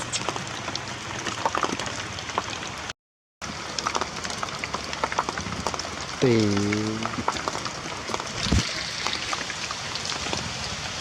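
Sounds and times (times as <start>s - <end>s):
heavy rain falling: 3.5s - 11.0s.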